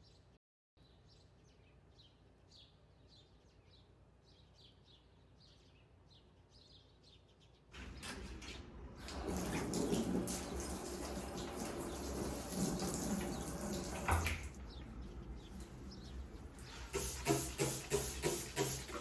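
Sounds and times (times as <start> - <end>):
running water rushing: 7.8 - 19.0.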